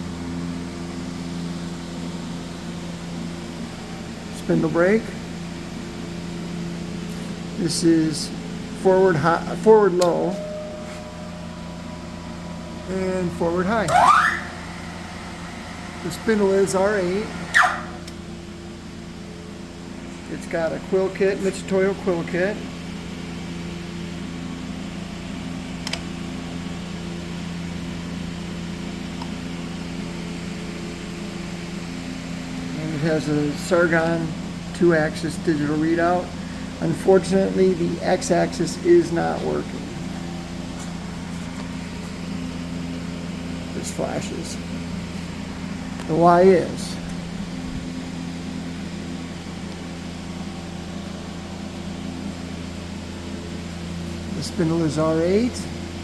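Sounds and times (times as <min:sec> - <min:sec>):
shop machinery humming: 0:00.0 - 0:56.0
milling machine motor hum: 0:05.4 - 0:18.9.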